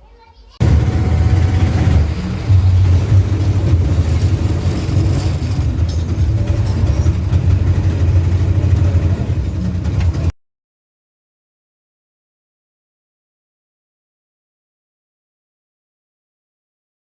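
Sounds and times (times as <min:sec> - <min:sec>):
vehicle engine and road rumble: 0:00.6 - 0:10.4.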